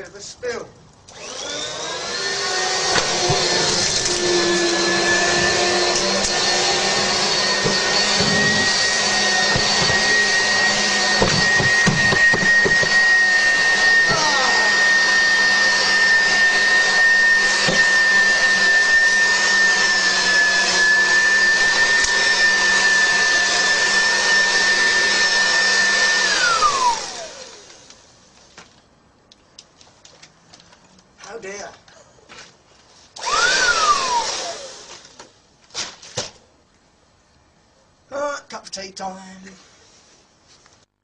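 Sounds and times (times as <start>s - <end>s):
vacuum cleaner whining: 1.1s - 28.2s, 33.2s - 35.3s.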